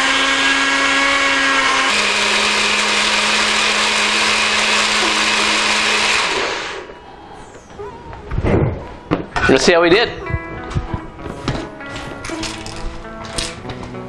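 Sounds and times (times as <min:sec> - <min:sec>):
blender motor running: 0:00.0 - 0:07.0.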